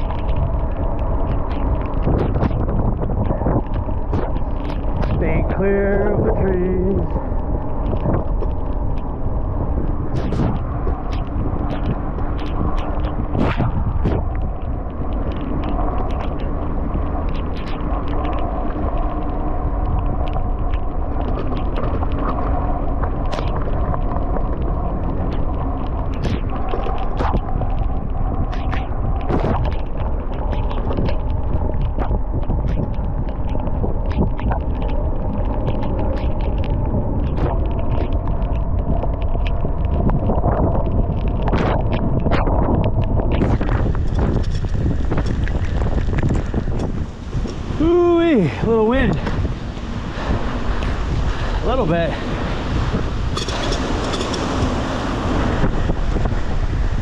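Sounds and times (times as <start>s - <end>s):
faint steady hum: 0.0s - 57.0s
wind rumbling on microphone: 0.0s - 57.0s
sharp clicks: 10.1s - 16.6s, 17.2s - 19.3s.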